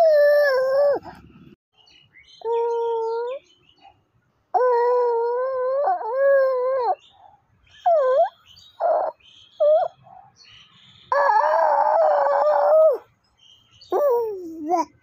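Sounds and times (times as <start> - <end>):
baby wailing and squealing: 0.0 - 1.1, 4.6 - 7.0, 11.1 - 13.0.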